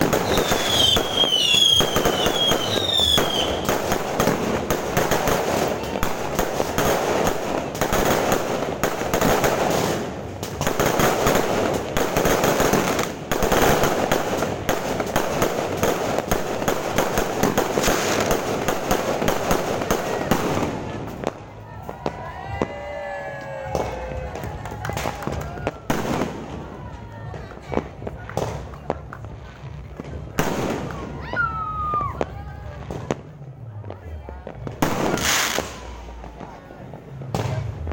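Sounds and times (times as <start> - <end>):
fireworks whistling: 0.0 - 21.0
fireworks bangs and crackling: 0.0 - 37.9.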